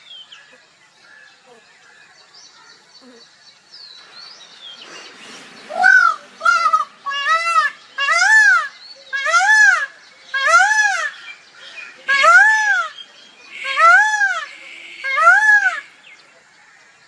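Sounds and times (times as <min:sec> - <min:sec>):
peacock wailing calls: 0:04.8 - 0:16.3.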